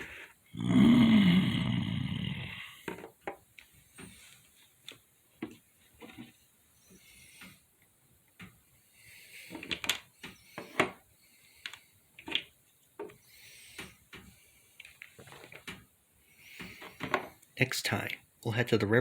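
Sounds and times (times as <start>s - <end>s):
objects knocking and clicking: 2.9s - 4.2s, 9.5s - 11.0s, 11.6s - 13.2s, 16.6s - 17.5s.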